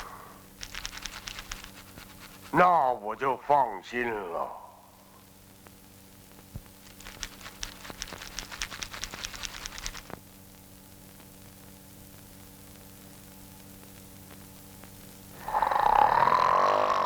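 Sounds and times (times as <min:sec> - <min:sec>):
faint film soundtrack hum: 0:00.0 - 0:17.0.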